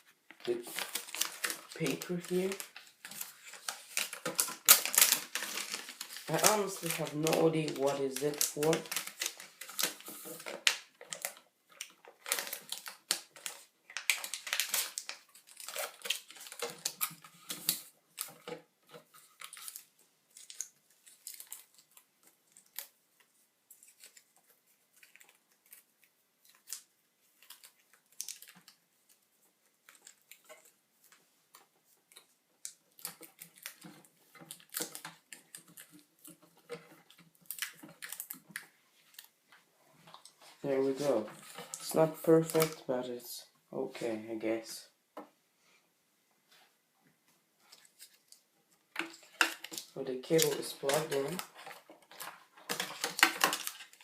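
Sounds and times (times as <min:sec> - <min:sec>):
paper rustling and crinkling: 0:00.0 - 0:43.0, 0:47.6 - 0:54.0.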